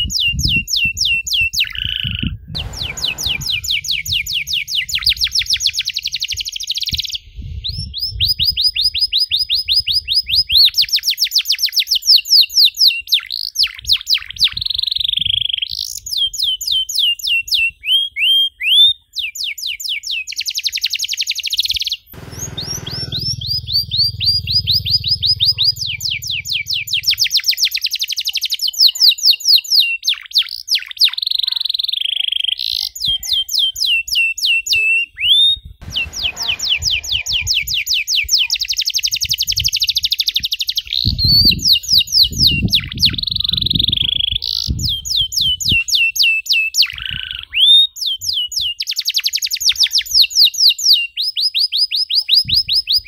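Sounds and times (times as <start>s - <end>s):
canary singing trills: 0.0s - 53.0s
low hum: 2.5s - 6.0s, 22.2s - 27.3s, 35.8s - 37.9s.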